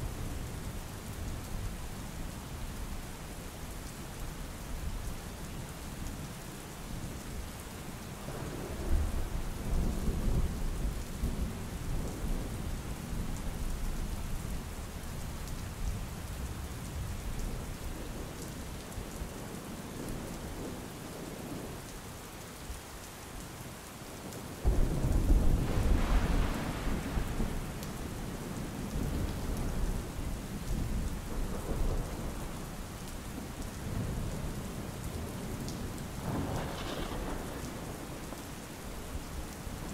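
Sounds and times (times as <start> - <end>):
steady rain: 0.0 - 39.9
thunder rolling: 24.6 - 27.8, 36.2 - 38.2.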